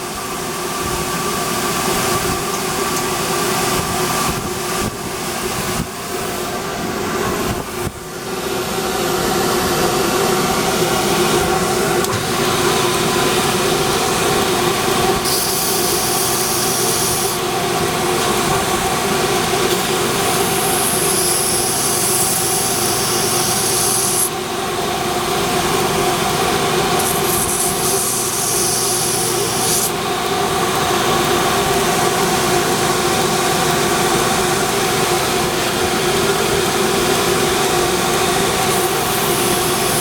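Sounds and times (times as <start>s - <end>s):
grinder motor humming: 10.7s - 30.8s, 34.1s - 40.0s
metal grinding hiss: 15.2s - 17.5s, 19.8s - 24.4s, 26.9s - 30.0s, 38.7s - 40.0s.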